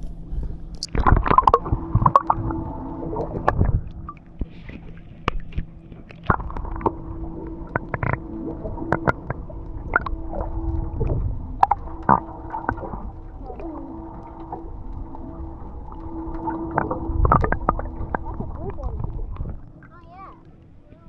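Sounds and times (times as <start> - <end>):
low hum: 0.0 - 21.0
water sloshing and gurgling: 0.0 - 21.0.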